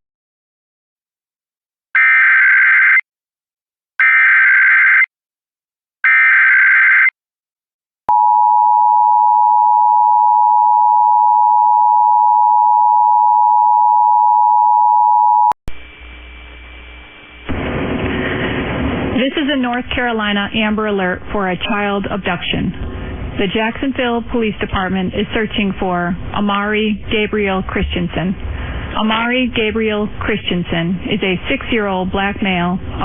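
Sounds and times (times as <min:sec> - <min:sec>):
broadcast audio: 0:15.7 - 0:33.0.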